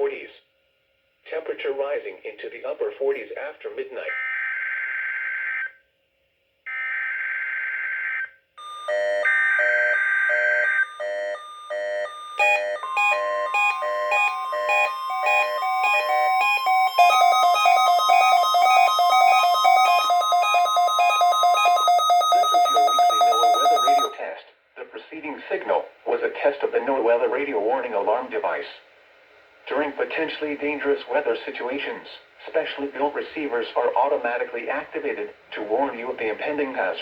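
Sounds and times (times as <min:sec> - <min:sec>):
steady warning alarm tone: 0:08.6 - 0:24.2
weather radio alarm beeps: 0:08.6 - 0:24.2.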